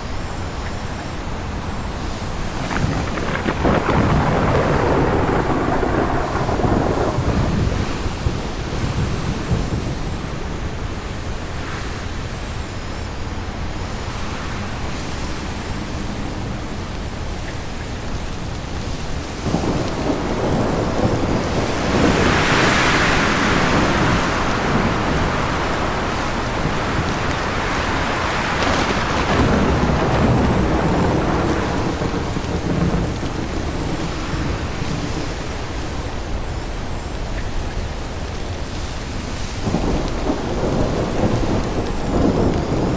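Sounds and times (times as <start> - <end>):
strong wind gusting: 0.0 - 42.9.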